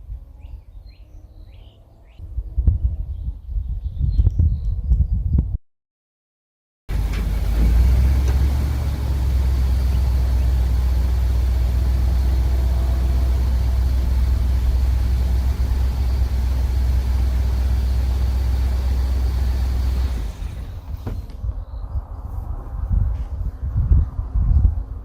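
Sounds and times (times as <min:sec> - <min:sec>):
engine idling with low hum: 0:06.9 - 0:25.0.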